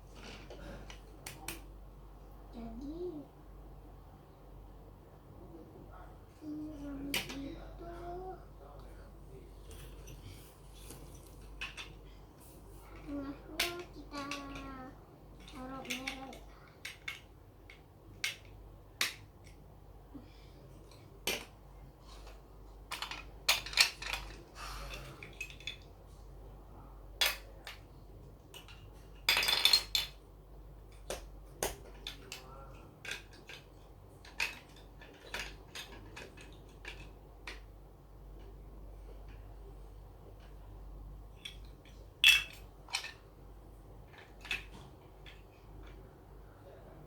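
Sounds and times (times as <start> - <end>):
plastic pieces rattling: 33.0 - 37.6.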